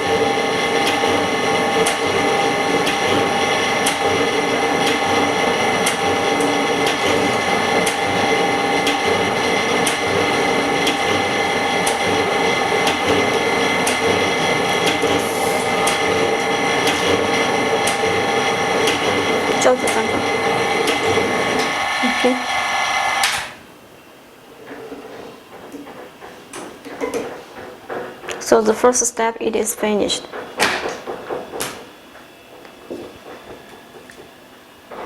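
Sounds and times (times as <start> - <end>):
machine hum of held tones: 0.0 - 23.9.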